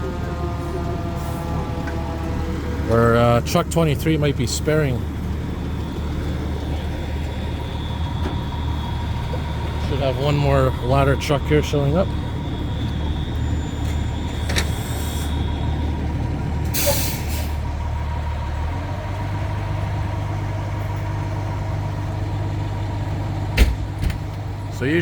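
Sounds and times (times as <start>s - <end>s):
diesel engine idling: 0.0s - 25.0s
air brakes hiss: 13.7s - 15.5s, 16.7s - 17.6s
sharp knock: 23.6s - 24.3s.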